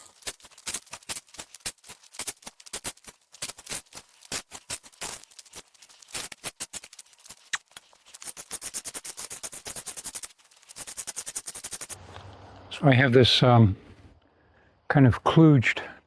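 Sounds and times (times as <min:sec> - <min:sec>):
gravel crunching by hand: 0:00.0 - 0:08.3
fast even clicking: 0:00.3 - 0:12.0.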